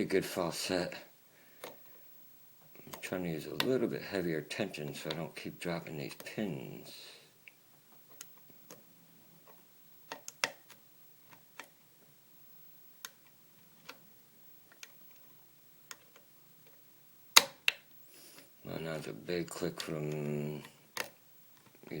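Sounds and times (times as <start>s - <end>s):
lock pick clicking pins: 10.1s - 11.7s.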